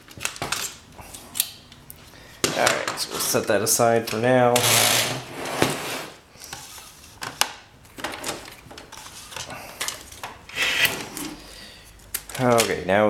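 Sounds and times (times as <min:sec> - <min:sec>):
plastic parts clicking and knocking: 0:00.0 - 0:01.6, 0:07.2 - 0:12.8
plastic rubbing: 0:05.0 - 0:12.7.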